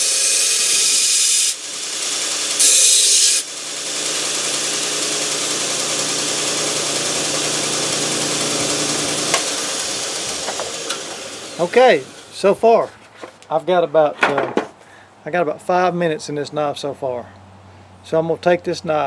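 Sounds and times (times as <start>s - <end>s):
belt sander running: 0.0s - 13.4s.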